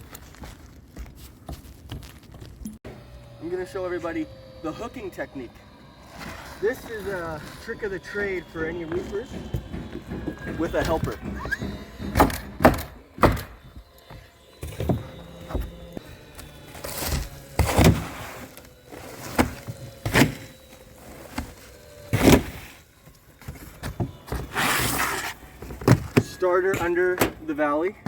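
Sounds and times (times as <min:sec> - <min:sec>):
sharp knocks of roofing shingles: 0:08.8 - 0:27.5.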